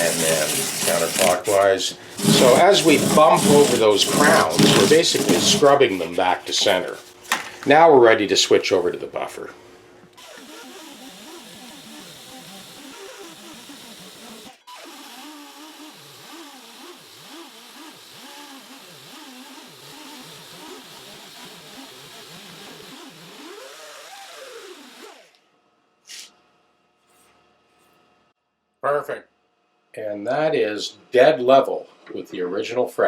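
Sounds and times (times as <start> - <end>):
electric buffing wheel polishing: 0.0 - 5.8, 10.2 - 25.4.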